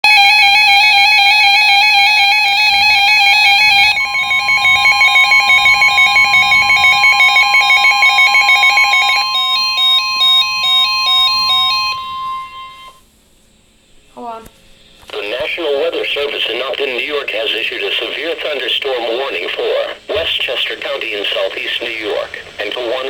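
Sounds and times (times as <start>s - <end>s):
emergency alert tones: 0.0s - 13.0s, 15.2s - 23.0s
pulsing electronic pattern: 2.2s - 12.9s.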